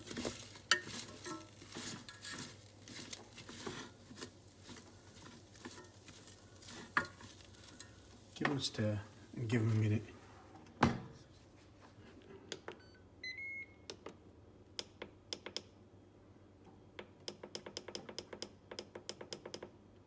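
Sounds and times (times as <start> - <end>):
control panel beep: 12.8 - 13.8.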